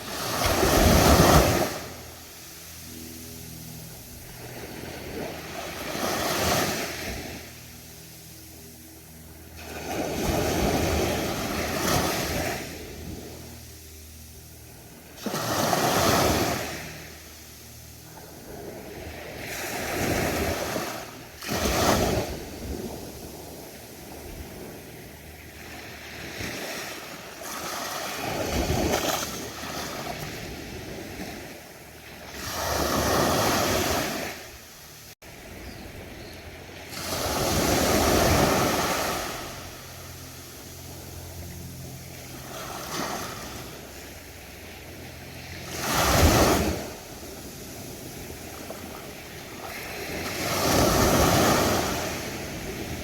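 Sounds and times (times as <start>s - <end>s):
ocean surf breaking: 0.0s - 2.0s, 4.4s - 7.5s, 36.8s - 40.7s, 45.4s - 53.0s.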